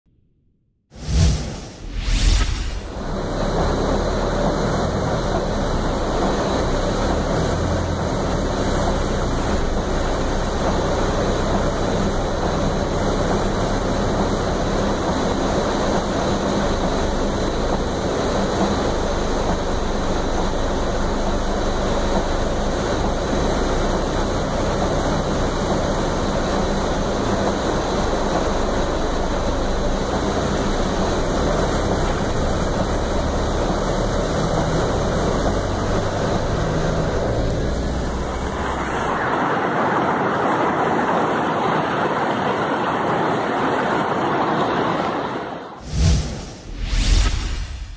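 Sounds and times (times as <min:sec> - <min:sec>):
river rushing roar: 0:02.3 - 0:46.2.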